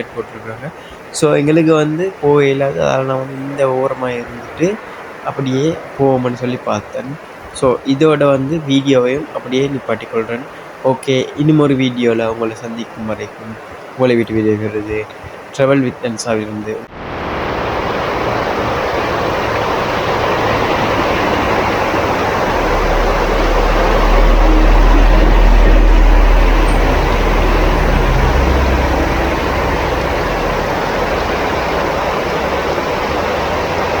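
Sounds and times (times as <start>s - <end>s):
road noise on wet road: 0.0s - 14.0s, 16.8s - 34.0s
heavy vehicle passing rumble: 16.8s - 34.0s.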